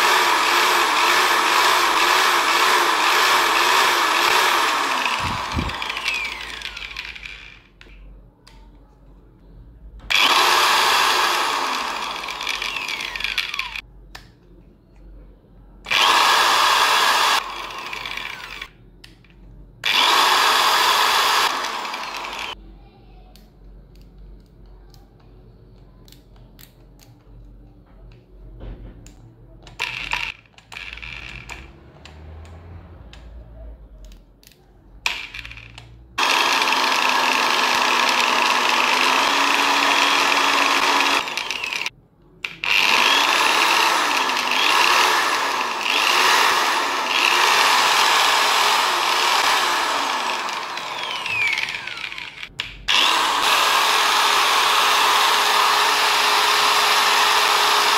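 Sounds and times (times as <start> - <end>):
electric drill running: 0.0 - 7.7, 10.1 - 13.8, 15.9 - 18.7, 19.8 - 22.6, 29.8 - 31.6, 35.1 - 57.9.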